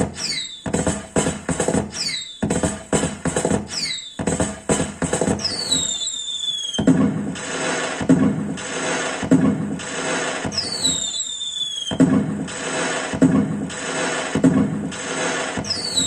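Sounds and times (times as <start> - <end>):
electronic music with steady beat: 0.0 - 6.0, 6.8 - 11.2, 11.9 - 16.0
falling whistle sweeps: 0.1 - 0.7, 1.9 - 2.4, 3.7 - 4.2, 5.4 - 7.0, 10.5 - 12.0, 15.6 - 16.0.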